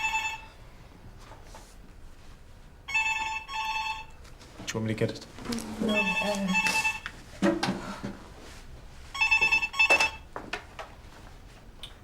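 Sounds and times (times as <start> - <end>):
telephone ringing: 0.0 - 0.6, 2.9 - 4.2, 5.8 - 7.1, 9.1 - 10.3.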